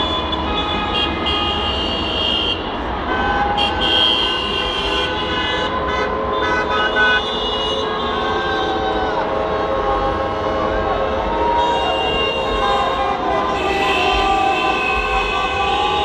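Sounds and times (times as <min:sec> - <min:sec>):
car horns honking: 0:00.0 - 0:16.0
low traffic rumble: 0:00.0 - 0:16.0.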